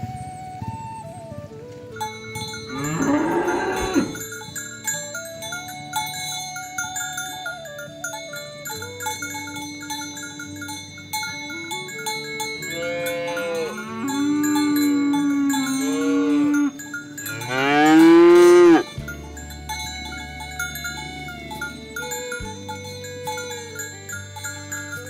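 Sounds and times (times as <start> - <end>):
chiming mallet percussion music: 1.6 - 25.0
cattle mooing: 2.7 - 4.2, 12.6 - 19.5.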